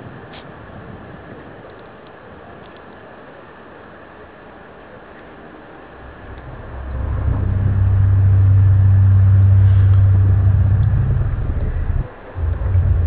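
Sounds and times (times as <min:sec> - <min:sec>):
deep droning hum: 0:05.9 - 0:13.0.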